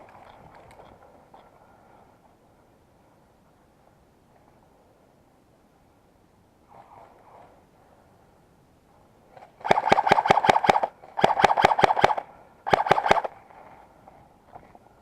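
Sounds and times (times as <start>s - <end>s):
airsoft gun firing full auto: 9.6s - 13.4s.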